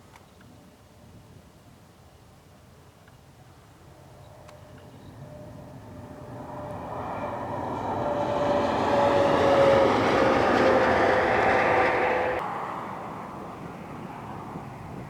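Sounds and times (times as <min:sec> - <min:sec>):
diesel train rumbling: 0:03.9 - 0:13.4
steady tones sinking in pitch: 0:04.3 - 0:12.7.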